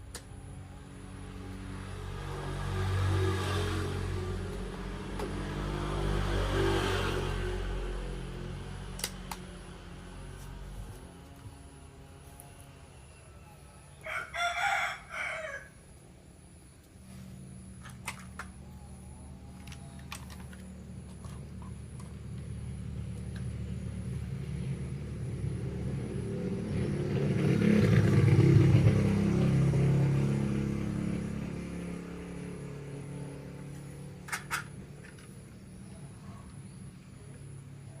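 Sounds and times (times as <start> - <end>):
vehicle engine passing by: 0.0 - 15.7, 16.9 - 38.0
sharp clicks: 9.0 - 9.5.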